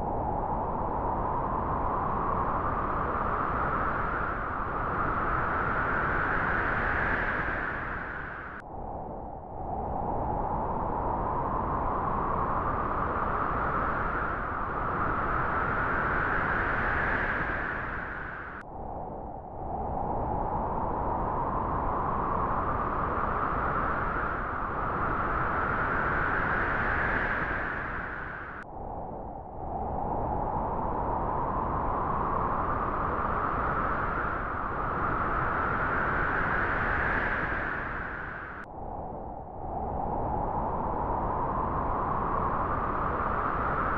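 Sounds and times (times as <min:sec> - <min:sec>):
wind gusting through grass: 0:09.9 - 0:43.9.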